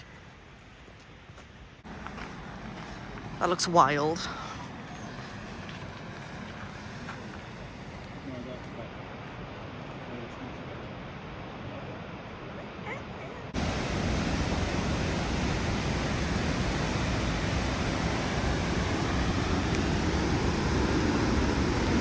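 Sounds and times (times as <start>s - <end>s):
waterfall roar: 13.4s - 22.0s.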